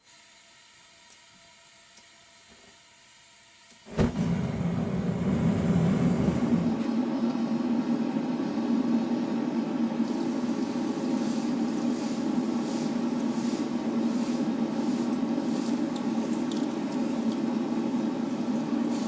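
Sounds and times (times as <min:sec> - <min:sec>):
machine low mechanical rumble: 0:03.9 - 0:06.9
machine starting thump: 0:03.9 - 0:06.9.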